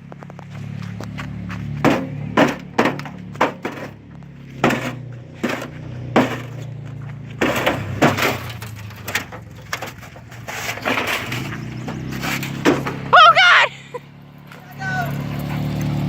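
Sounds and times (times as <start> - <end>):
microwave being smashed: 7.4 - 11.6.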